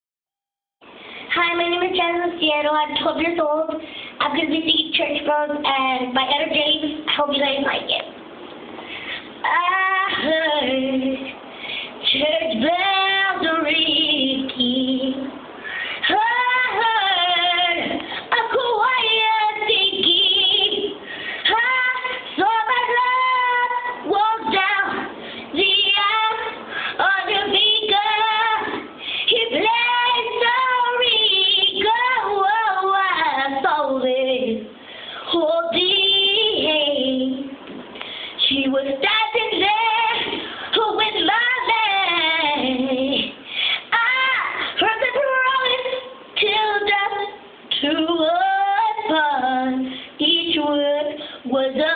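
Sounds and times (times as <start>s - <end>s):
girl breathing: 0.9s - 1.3s, 3.8s - 4.2s, 8.7s - 9.4s, 11.3s - 12.0s, 15.6s - 16.1s, 21.0s - 21.5s, 25.1s - 25.6s, 26.6s - 27.0s, 28.9s - 29.3s, 34.7s - 35.3s, 37.9s - 38.4s, 40.3s - 40.8s, 43.4s - 43.9s, 49.8s - 50.2s
girl singing unaccompanied: 1.2s - 8.2s, 9.4s - 11.4s, 12.0s - 37.6s, 38.3s - 51.9s.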